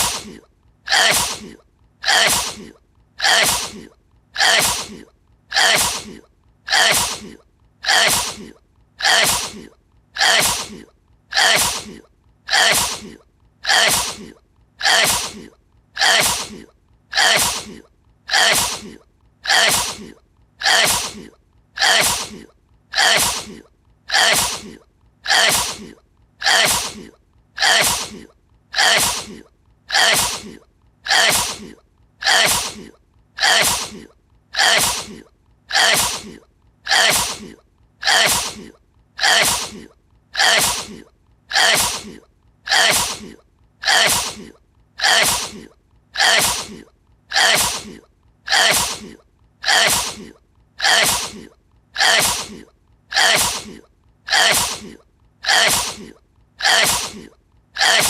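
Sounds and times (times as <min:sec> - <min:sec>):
person sneezing: 0:00.0 - 0:58.0.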